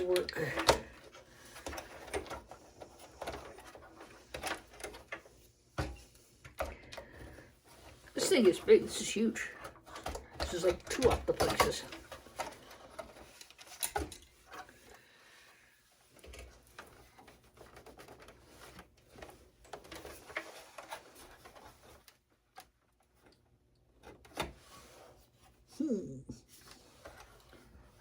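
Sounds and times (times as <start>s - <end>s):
clicks and knocks inside computer case: 9.7s - 14.4s.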